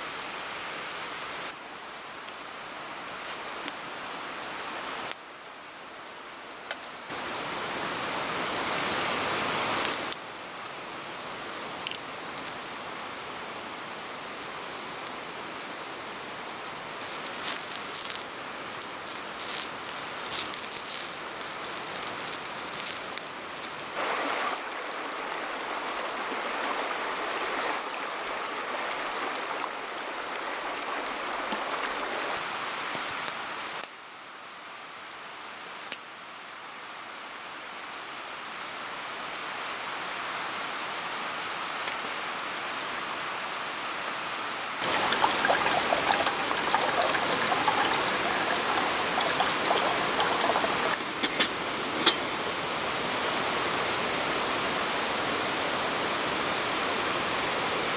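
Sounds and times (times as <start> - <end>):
running water rushing: 7.0 - 13.5, 16.1 - 32.9, 44.7 - 57.9
sharp crackling: 16.9 - 24.0.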